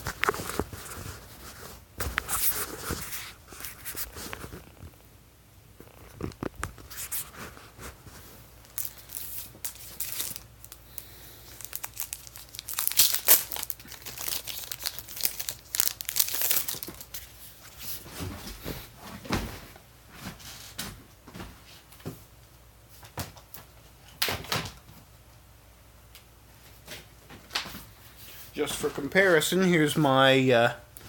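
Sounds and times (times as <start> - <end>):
packaging crinkling: 5.8 - 17.8.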